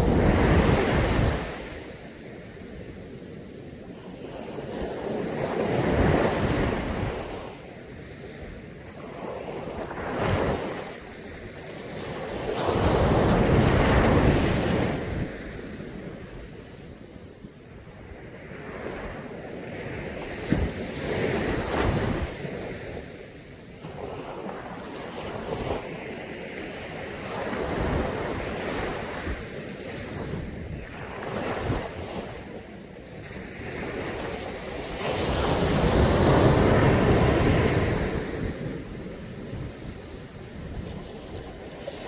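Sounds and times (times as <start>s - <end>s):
wind buffeting microphone: 0.0s - 3.0s, 26.9s - 42.0s
sea waves breaking on beach: 0.0s - 17.0s, 17.9s - 42.0s.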